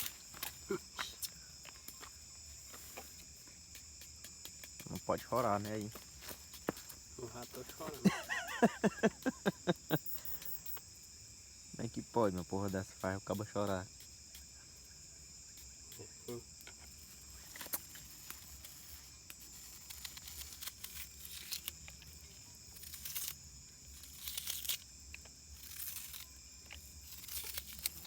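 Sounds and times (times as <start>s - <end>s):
insects trilling: 0.0s - 28.0s.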